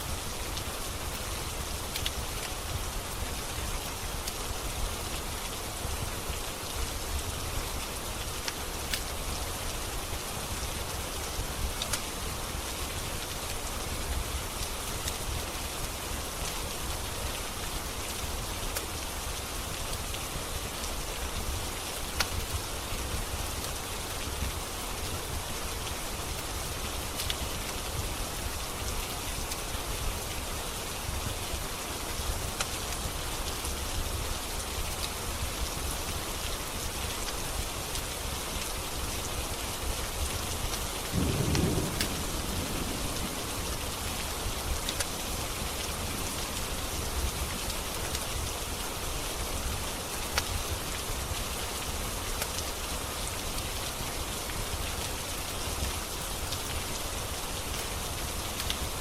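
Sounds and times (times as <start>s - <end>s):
steady rain falling: 0.0s - 59.0s
low rumble of thunder: 41.1s - 46.7s.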